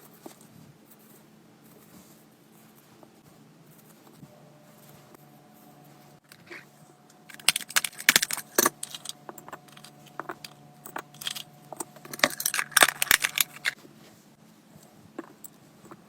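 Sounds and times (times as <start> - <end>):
packaging crinkling and rustling: 7.2 - 13.8.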